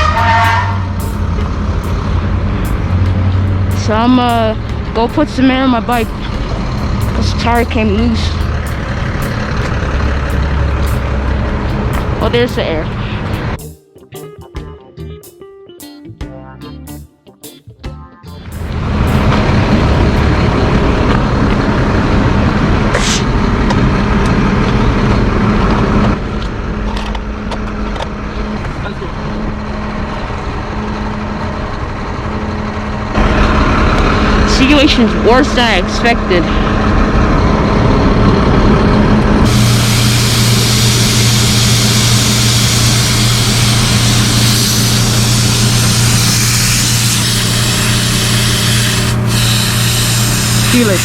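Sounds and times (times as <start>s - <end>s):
air compressor running: 31.1s - 51.0s
air hissing: 39.4s - 51.0s.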